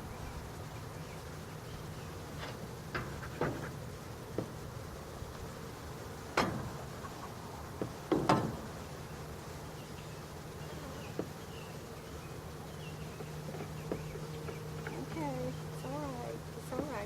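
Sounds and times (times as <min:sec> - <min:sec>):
bees humming: 0:00.0 - 0:17.0
sharp knocks: 0:07.8 - 0:08.6.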